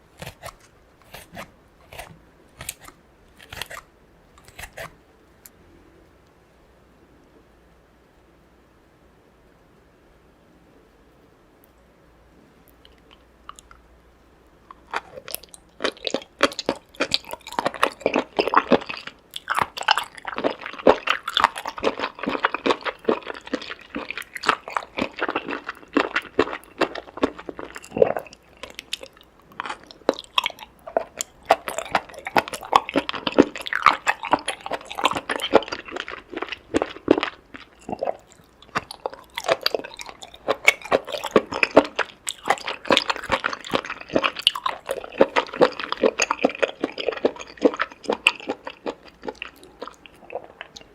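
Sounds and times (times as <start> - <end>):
chewing and crunching seafood: 14.6 - 50.9.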